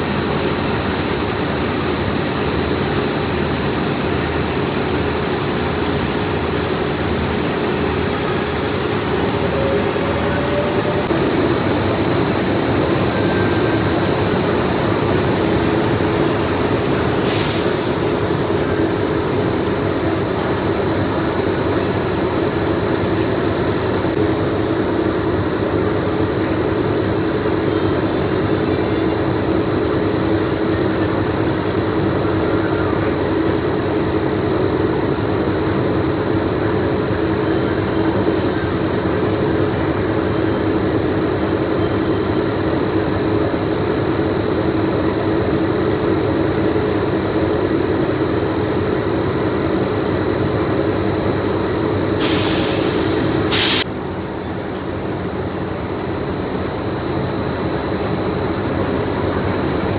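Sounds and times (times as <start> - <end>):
high-pitched whine: 0.0 - 40.7, 47.8 - 53.9
factory machinery drone: 0.0 - 59.9
hiss: 16.4 - 18.8, 52.2 - 53.8.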